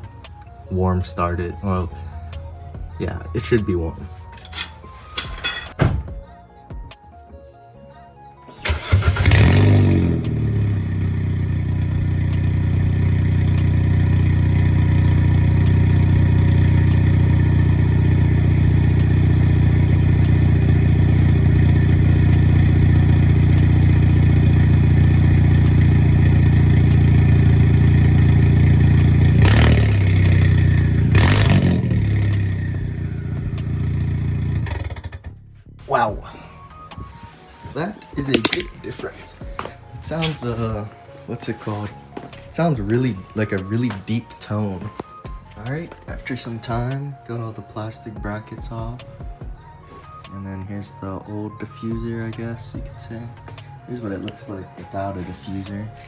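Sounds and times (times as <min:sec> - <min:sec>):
engine revving: 0:08.5 - 0:35.5
car engine starting and idling: 0:08.5 - 0:35.8, 0:52.0 - 0:56.0.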